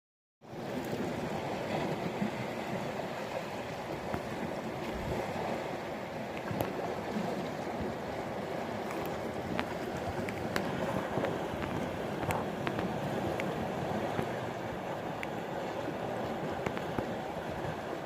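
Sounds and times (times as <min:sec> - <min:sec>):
sea water washing on shore: 0:00.5 - 0:18.0.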